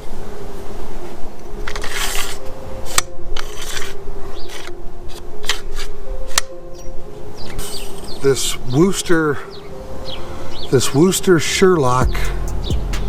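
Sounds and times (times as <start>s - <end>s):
pole rubbing and scraping: 1.6s - 5.9s.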